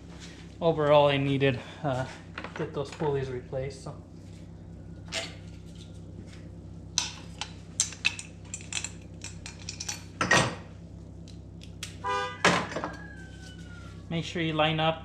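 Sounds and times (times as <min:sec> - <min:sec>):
metal tools clinking: 0:07.4 - 0:10.6.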